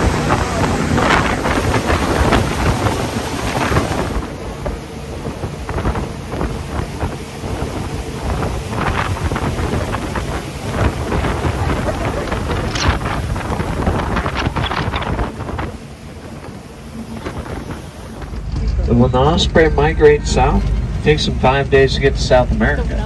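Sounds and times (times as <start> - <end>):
water spattering: 0.0 - 4.4
wind buffeting microphone: 0.0 - 23.0.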